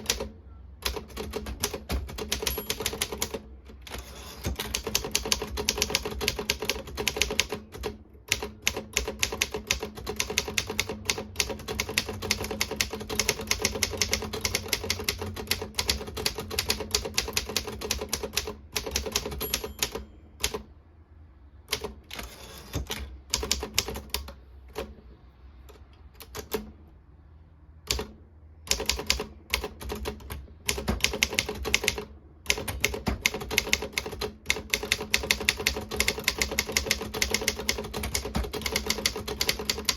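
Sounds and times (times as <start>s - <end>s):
manual typewriter typing: 0.0s - 20.7s, 21.7s - 24.9s, 27.9s - 39.9s.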